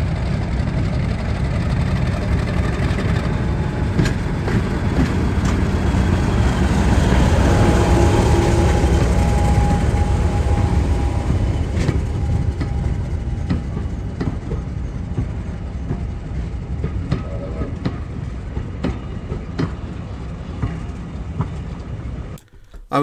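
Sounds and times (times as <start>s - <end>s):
train low rumble: 0.0s - 21.9s
train wheels clicking on rails: 0.2s - 14.6s.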